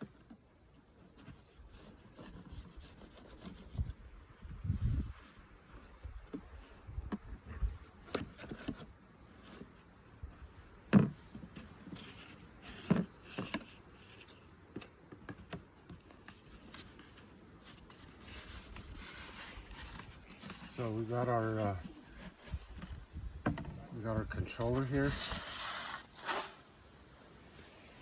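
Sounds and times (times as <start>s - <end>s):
cardboard packaging rustling: 15.3s - 23.0s, 24.4s - 26.7s.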